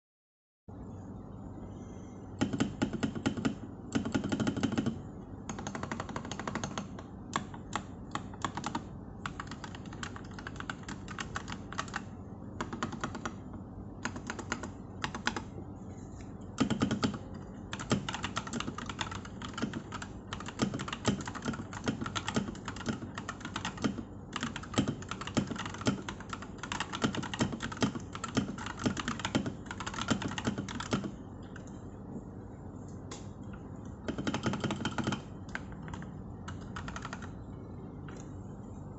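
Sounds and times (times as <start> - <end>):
mechanical keyboard typing: 2.4 - 15.5, 16.5 - 31.7, 33.8 - 37.5.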